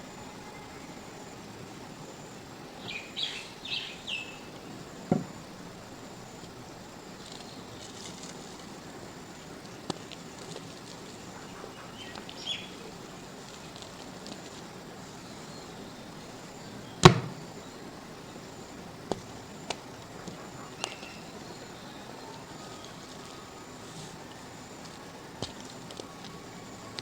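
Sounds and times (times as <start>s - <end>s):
faint hiss: 0.0s - 25.4s
dried mud cracking and crumbling: 22.4s - 27.0s.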